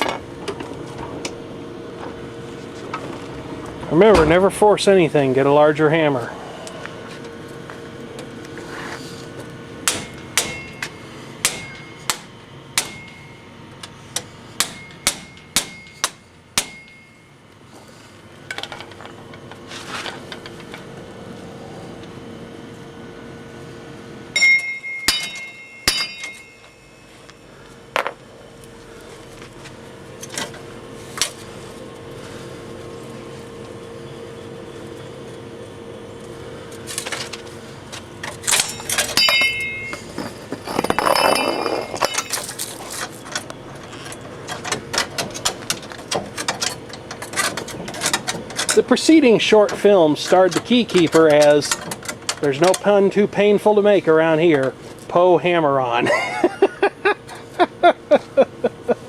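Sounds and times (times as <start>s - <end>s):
hammer striking metal: 9.8s - 13.5s, 14.2s - 17.3s, 24.4s - 27.0s, 38.5s - 40.1s.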